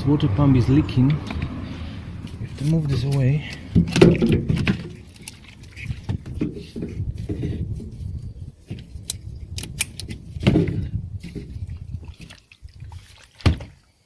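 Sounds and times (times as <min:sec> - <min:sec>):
plastic and metal clicks and knocks: 0:03.5 - 0:04.9.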